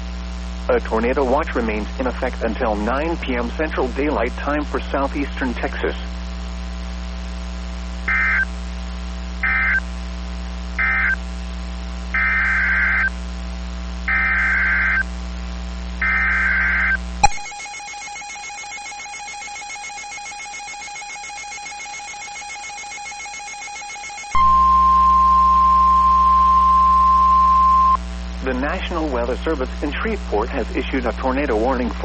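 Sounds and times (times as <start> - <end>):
screechy digital data bursts: 8.1 - 8.5, 9.4 - 9.8, 10.8 - 11.2, 12.2 - 13.1, 14.1 - 15.0, 16.0 - 28.0
two-tone attention signal: 16.0 - 28.0.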